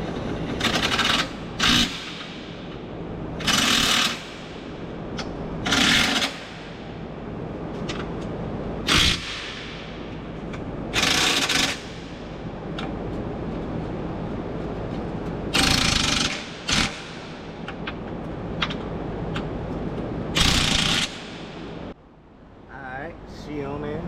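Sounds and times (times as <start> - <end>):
steady background hum: 0.0 - 24.0
impact wrench whirring: 3.4 - 4.5, 5.6 - 6.6, 10.9 - 12.0, 15.5 - 17.2, 20.4 - 21.4.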